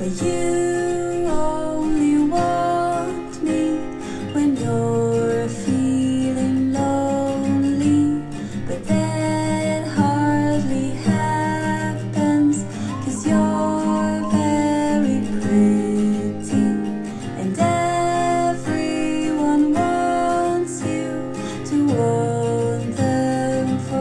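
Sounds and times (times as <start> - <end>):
song with strummed acoustic guitar: 0.0 - 24.0.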